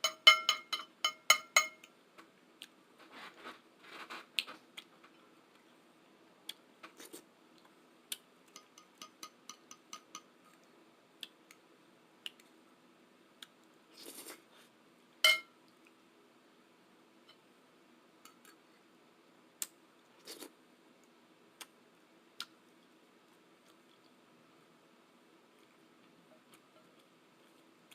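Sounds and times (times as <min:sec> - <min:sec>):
metal utensil clinking on dish: 0:00.0 - 0:01.9, 0:15.2 - 0:15.5
soft mouth eating sounds: 0:06.4 - 0:09.0, 0:12.2 - 0:12.6, 0:13.4 - 0:14.8, 0:19.6 - 0:24.2, 0:25.5 - 0:27.9.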